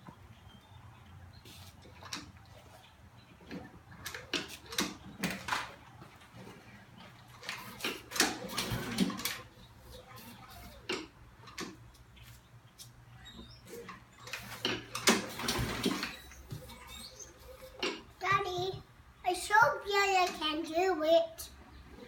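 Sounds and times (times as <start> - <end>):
lawn mower recoil starter pulled: 13.7 - 16.3.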